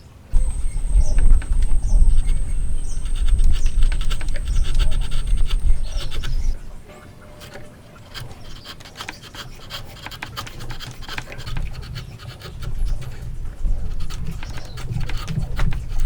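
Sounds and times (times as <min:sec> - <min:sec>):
hand tools scraping wood: 0:00.3 - 0:16.0
low rumble: 0:00.4 - 0:06.6
steel knocking on wood: 0:00.4 - 0:06.6.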